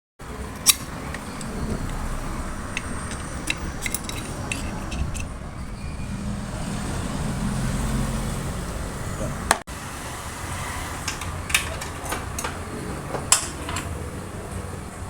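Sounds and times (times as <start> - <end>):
low rumble of road traffic: 0.2 - 15.0
hand tools clicking on metal: 0.6 - 5.4, 11.0 - 14.1.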